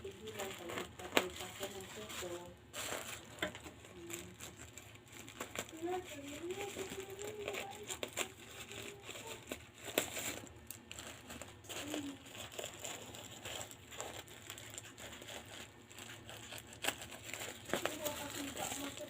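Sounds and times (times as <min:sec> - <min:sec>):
packaging crinkling: 0:00.0 - 0:19.0.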